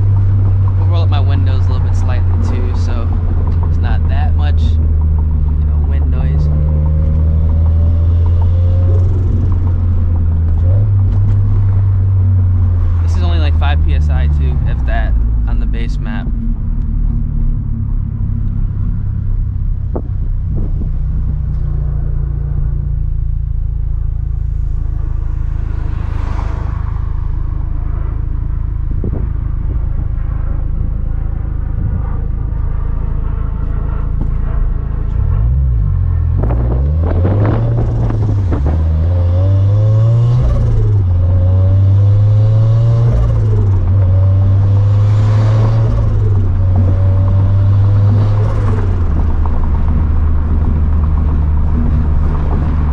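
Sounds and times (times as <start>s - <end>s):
turbocharged car engine revving: 0.0s - 52.9s.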